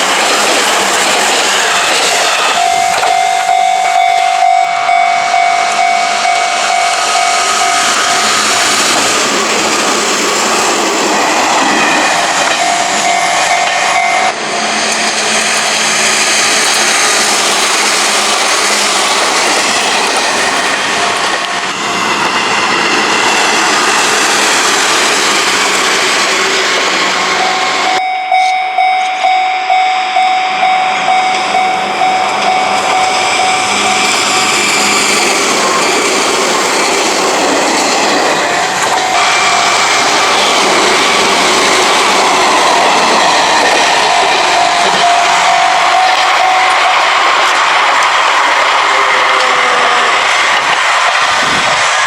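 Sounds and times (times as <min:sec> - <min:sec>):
crossing warning bell ringing: 0:00.0 - 0:15.4, 0:26.4 - 0:50.4
train wheels rushing: 0:00.0 - 0:52.0.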